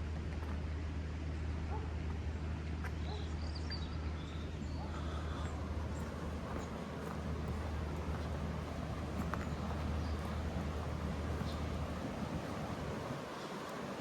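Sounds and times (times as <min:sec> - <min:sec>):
wind rumble: 0:05.6 - 0:14.0
footsteps on a path: 0:06.0 - 0:13.9.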